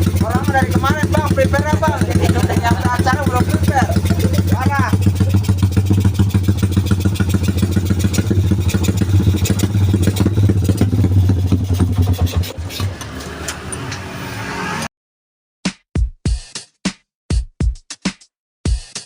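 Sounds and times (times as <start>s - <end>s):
motorcycle engine idling: 0.0s - 12.4s.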